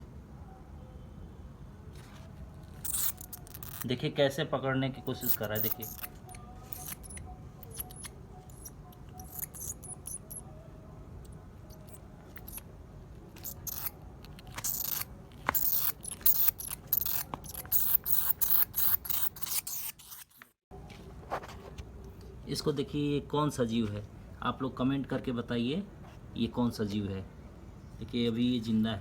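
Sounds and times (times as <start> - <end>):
bat claws scratching and scraping: 2.0 - 3.9, 5.1 - 10.4, 11.7 - 12.6, 13.3 - 20.6.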